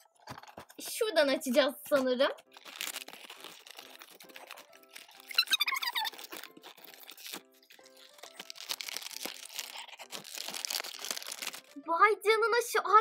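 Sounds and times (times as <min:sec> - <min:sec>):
background music with held notes: 0:00.0 - 0:13.0
packaging tearing and crinkling: 0:01.9 - 0:11.8.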